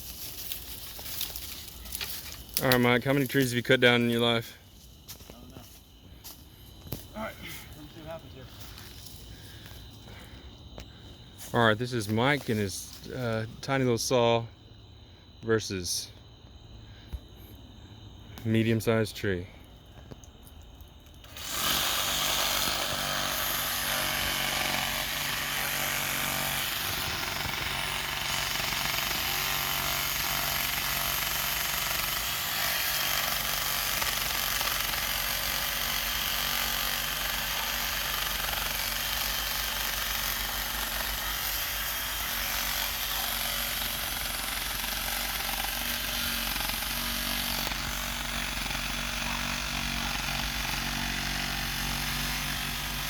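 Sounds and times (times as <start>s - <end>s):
reciprocating saw cutting wood: 21.2s - 53.0s.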